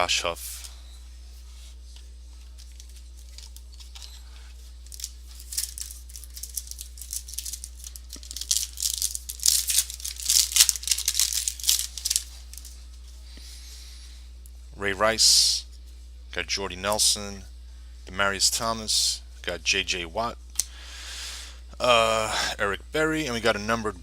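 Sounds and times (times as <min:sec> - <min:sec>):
cards being handled: 0:01.8 - 0:13.1
foil wrapper crinkling and tearing: 0:04.8 - 0:12.7.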